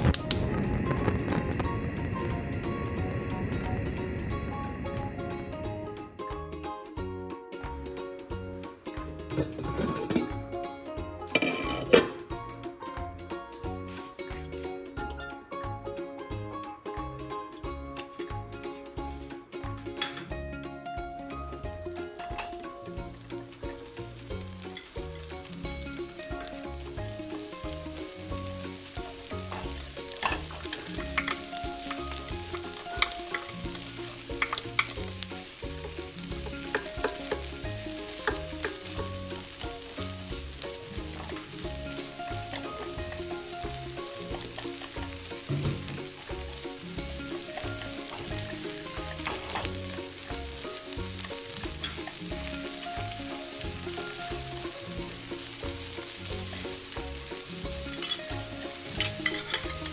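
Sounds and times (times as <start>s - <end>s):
utensil clicking against pot: 0.0s - 0.5s, 36.5s - 37.5s
food sizzling in oil: 8.9s - 12.5s, 21.1s - 59.9s.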